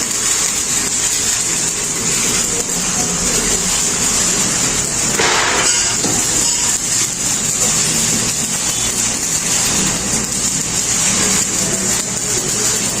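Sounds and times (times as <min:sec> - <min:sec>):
machine hiss and hum: 0:00.0 - 0:13.0.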